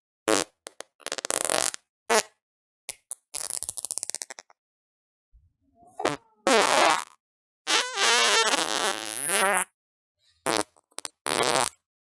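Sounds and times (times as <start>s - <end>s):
long fart: 0.3s - 2.3s, 5.9s - 9.7s, 10.4s - 11.8s.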